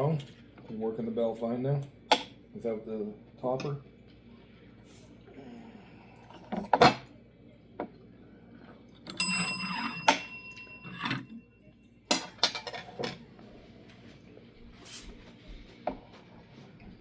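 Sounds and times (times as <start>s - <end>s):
service bell ringing: 9.2s - 11.7s.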